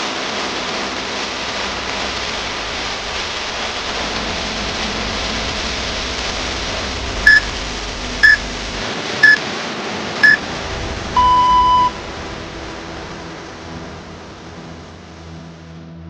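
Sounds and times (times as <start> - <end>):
steady hiss: 0.0 - 8.9
longer lower timer beep: 7.3 - 7.5, 11.2 - 12.0
short high timer beeps: 7.3 - 7.5, 11.2 - 12.0.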